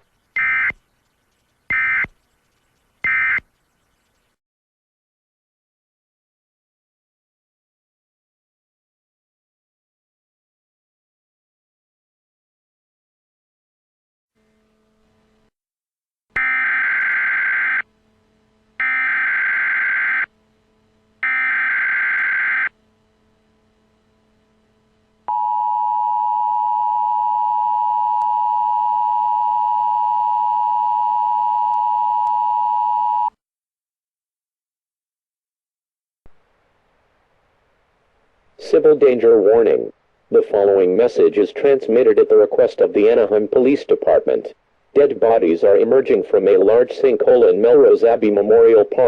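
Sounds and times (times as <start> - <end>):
digital data tone bursts: 0.0 - 4.2
faint hum: 16.4 - 33.3, 36.3 - 49.0.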